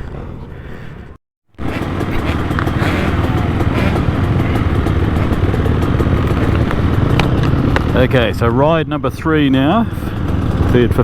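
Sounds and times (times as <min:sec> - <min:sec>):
sharp ticks: 0:01.6 - 0:08.3
motocross bike engine: 0:01.6 - 0:11.0.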